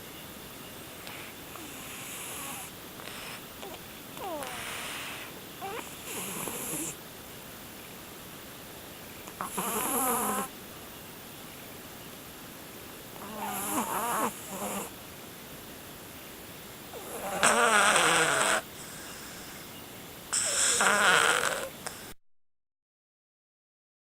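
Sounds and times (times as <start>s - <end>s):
cat snoring: 1.1s - 7.0s, 9.4s - 10.5s, 13.2s - 14.9s, 16.9s - 19.4s, 20.3s - 22.2s.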